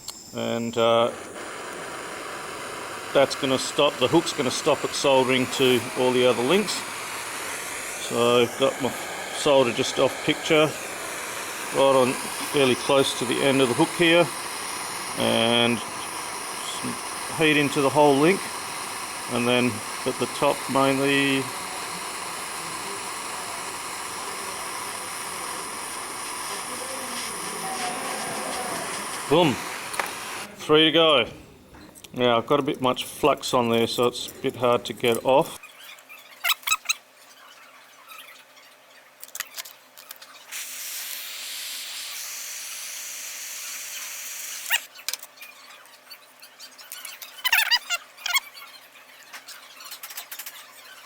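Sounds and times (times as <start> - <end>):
soldering torch flame hissing: 0.0 - 30.5, 40.5 - 44.9, 47.4 - 48.4.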